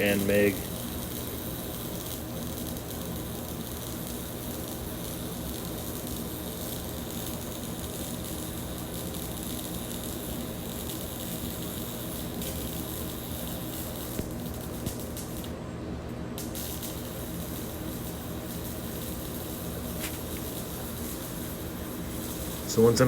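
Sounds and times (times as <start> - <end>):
welding arc sizzle: 0.0 - 23.0.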